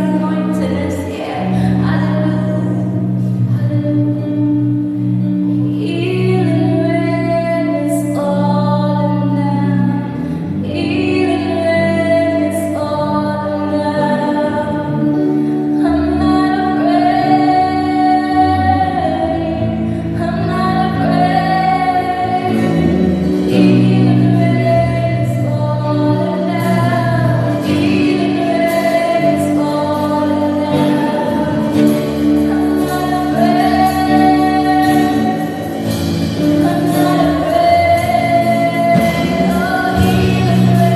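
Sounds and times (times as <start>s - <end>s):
woman singing: 0.0s - 40.9s.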